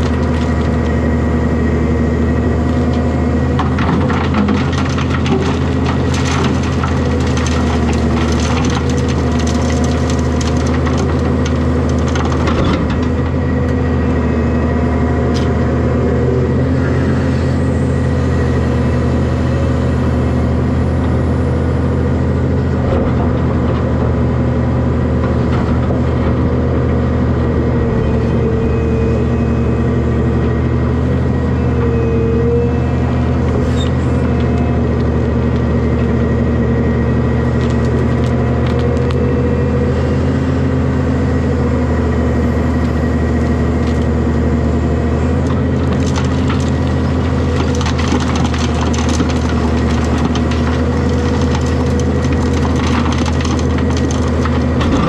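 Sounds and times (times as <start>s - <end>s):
diesel excavator engine running: 0.0s - 55.0s
hydraulic whine: 27.6s - 45.7s
material crunching in bucket: 45.6s - 55.0s.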